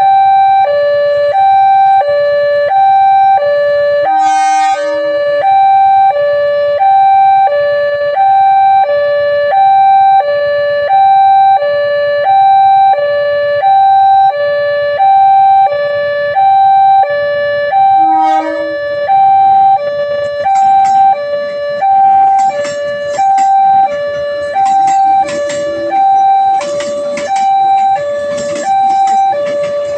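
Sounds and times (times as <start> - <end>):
two-tone level crossing siren: 0.0 - 29.9
sharp clacks: 20.2 - 29.9.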